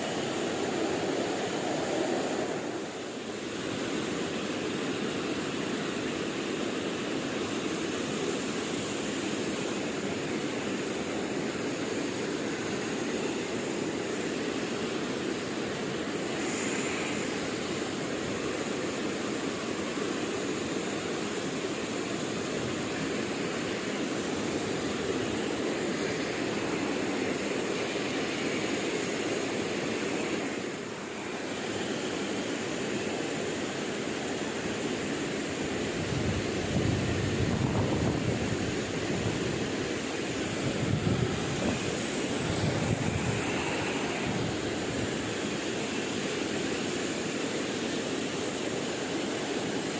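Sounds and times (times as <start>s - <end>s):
flowing river water: 0.0s - 49.9s.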